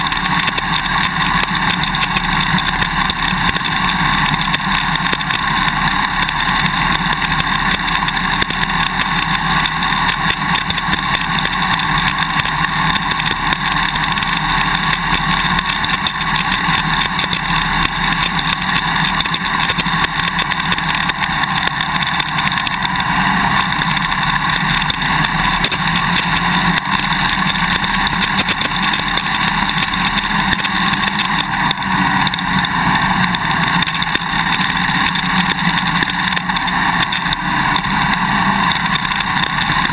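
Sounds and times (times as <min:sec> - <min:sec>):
dirt bike engine running: 0:00.0 - 0:39.9.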